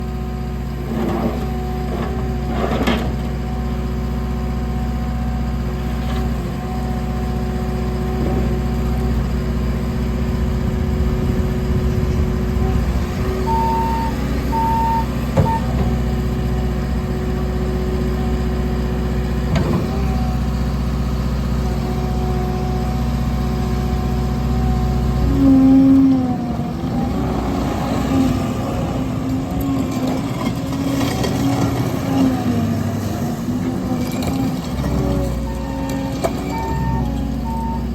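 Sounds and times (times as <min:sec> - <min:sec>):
diesel engine running: 0:00.0 - 0:37.9
short beeps: 0:13.4 - 0:15.8.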